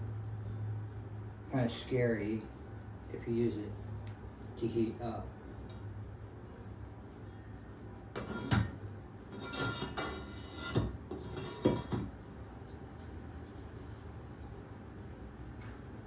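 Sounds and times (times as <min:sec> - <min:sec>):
glassware knocking and scraping: 0:09.3 - 0:12.1.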